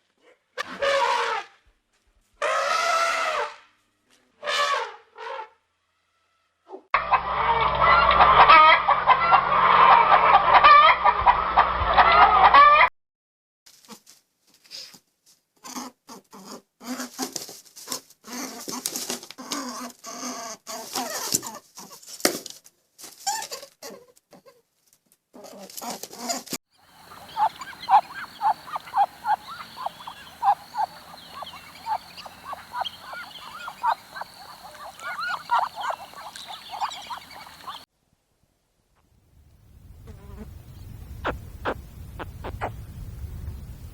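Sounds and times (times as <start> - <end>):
steady hiss: 26.8 - 37.8
harsh rasping bird calls: 26.8 - 37.9
short chirping bird calls: 26.8 - 37.9.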